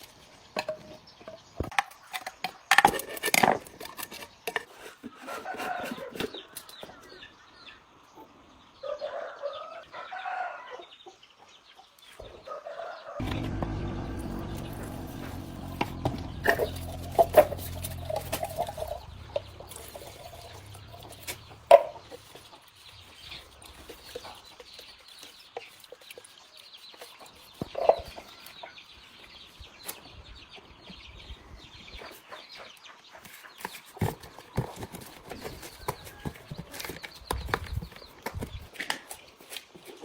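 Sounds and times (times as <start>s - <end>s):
chickens clucking: 10.7s - 26.4s, 27.0s - 34.7s
low hum: 13.2s - 22.1s.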